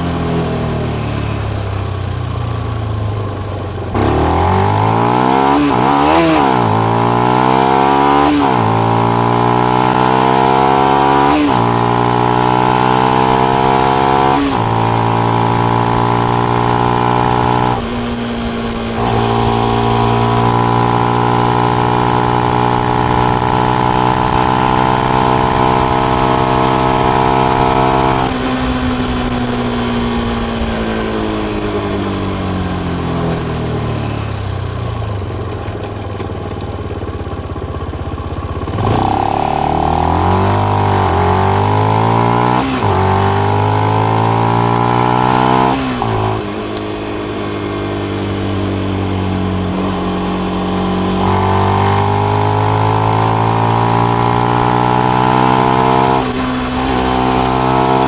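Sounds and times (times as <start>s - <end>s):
motorcycle engine revving: 0.0s - 58.0s.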